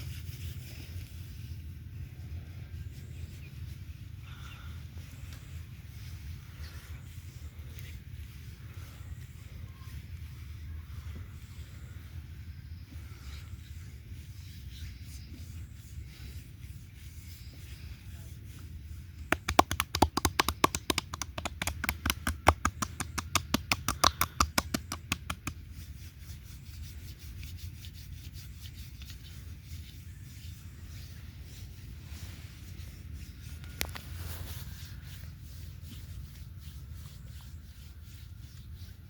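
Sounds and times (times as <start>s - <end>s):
steady low hum: 0.0s - 39.0s
hands slapping on skin: 19.2s - 25.6s.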